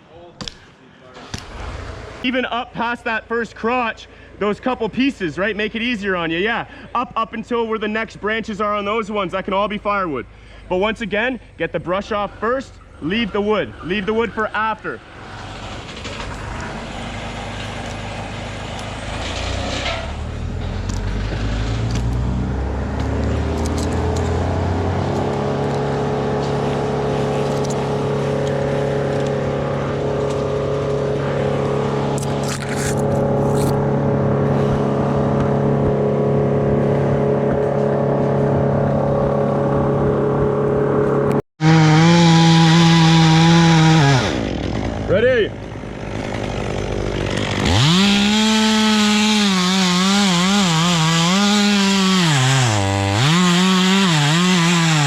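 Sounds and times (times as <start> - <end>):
motor engine revving: 15.0 - 55.0
chainsaw at full throttle: 20.9 - 39.8, 41.6 - 55.0.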